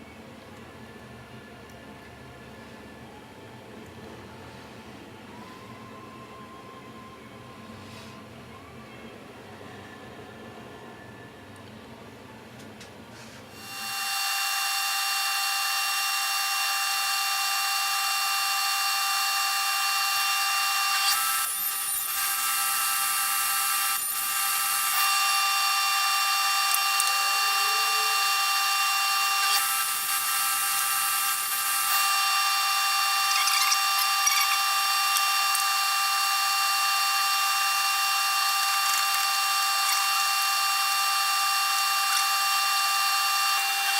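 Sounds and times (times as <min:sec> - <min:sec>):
table saw motor whining: 0:13.6 - 0:43.9.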